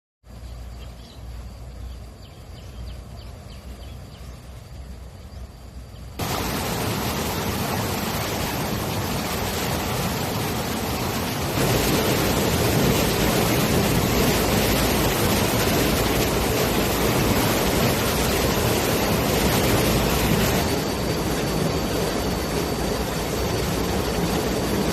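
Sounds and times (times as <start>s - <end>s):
water rushing through floodgates: 6.2s - 24.9s.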